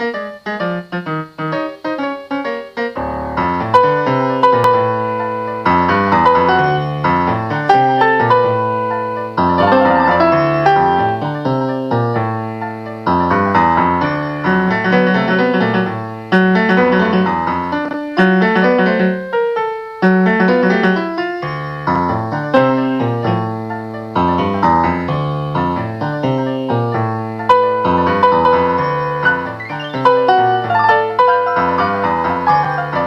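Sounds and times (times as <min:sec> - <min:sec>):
slow solo piano piece: 0:00.0 - 0:33.0.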